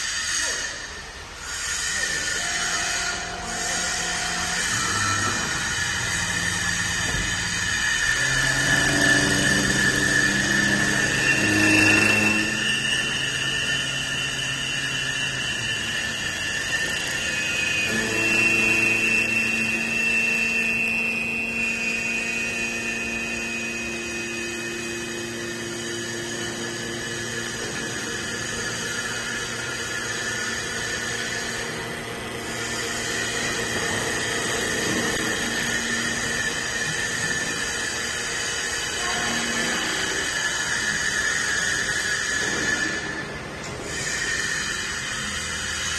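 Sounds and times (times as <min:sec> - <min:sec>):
lathe machine whine: 0:00.0 - 0:45.9
rough machine noise: 0:00.0 - 0:45.9.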